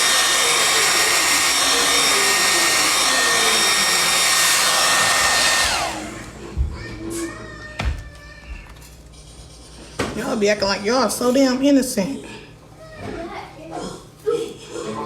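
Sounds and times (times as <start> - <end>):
hair dryer blowing: 0.0 - 6.4.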